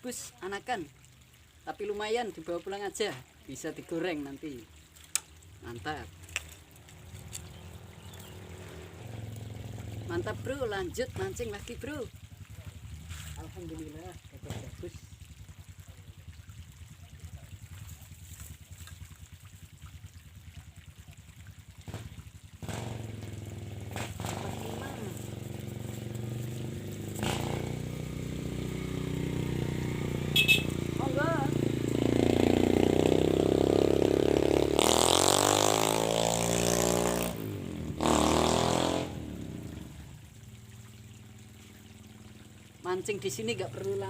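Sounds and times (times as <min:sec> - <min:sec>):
small engine puttering: 0:05.1 - 0:10.5, 0:21.8 - 0:40.0.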